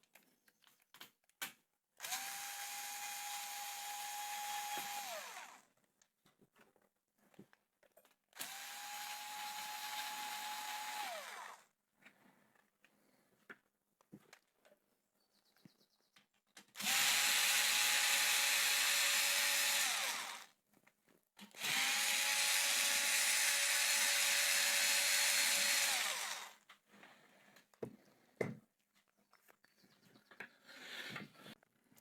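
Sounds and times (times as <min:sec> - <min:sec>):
power tool motor whining: 0:02.0 - 0:05.6, 0:08.4 - 0:11.6, 0:16.8 - 0:20.5, 0:21.5 - 0:26.6.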